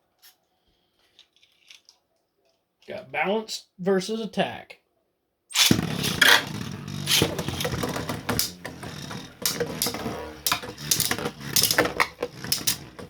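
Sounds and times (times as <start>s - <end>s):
plastic tops clicking and knocking: 5.5s - 13.0s
spinning tops buzzing: 5.5s - 13.0s.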